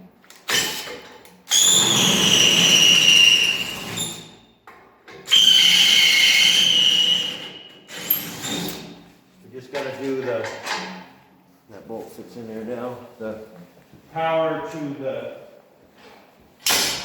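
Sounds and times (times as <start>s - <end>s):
electric drill whining into metal: 5.3s - 8.9s.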